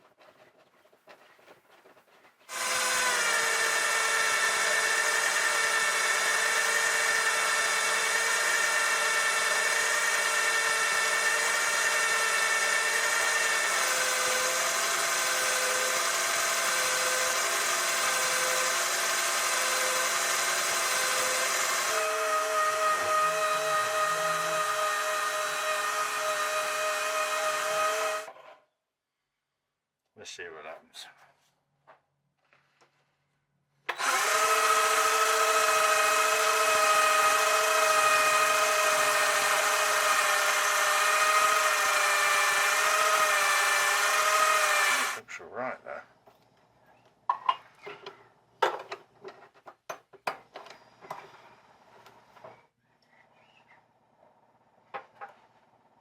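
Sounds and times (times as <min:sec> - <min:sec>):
electric power tool whining: 0:02.5 - 0:28.4, 0:33.9 - 0:45.2.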